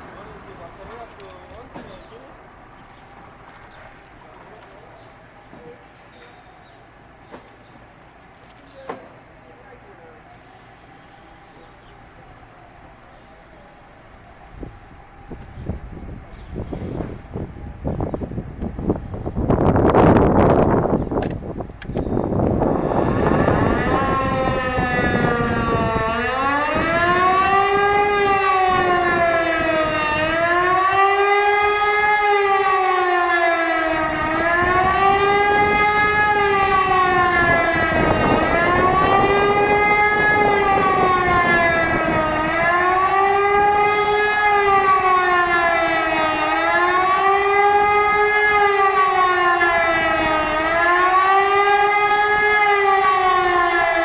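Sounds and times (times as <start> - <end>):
siren rising and falling howl: 11.5 - 54.0.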